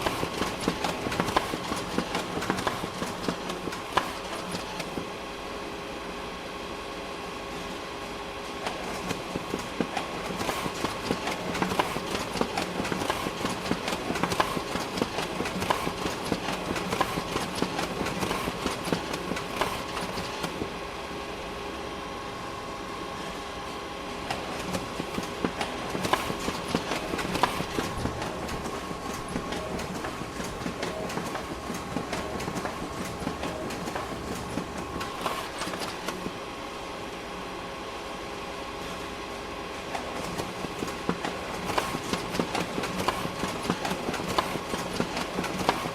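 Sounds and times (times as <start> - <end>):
paper feeding clattering: 0.0 - 5.0, 8.9 - 20.7, 24.3 - 36.3, 40.0 - 45.9
photocopier mechanical hum: 0.0 - 45.9.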